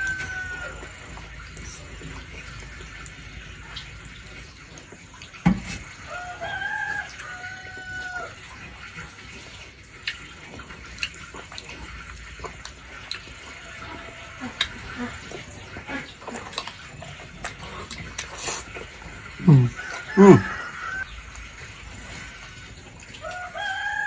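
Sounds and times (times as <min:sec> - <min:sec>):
rooster crowing: 0:00.0 - 0:01.0, 0:06.1 - 0:08.4, 0:19.4 - 0:21.1, 0:23.2 - 0:24.0.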